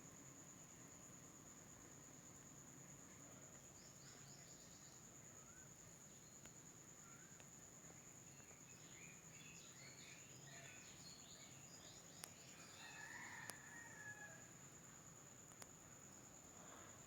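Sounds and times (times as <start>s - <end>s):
faint chirps: 3.0s - 14.4s.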